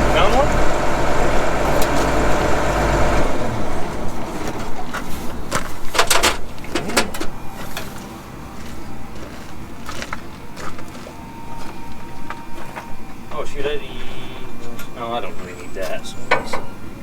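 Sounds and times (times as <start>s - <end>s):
engine hum: 0.0s - 17.0s
metallic clanks of tools: 14.6s - 16.8s.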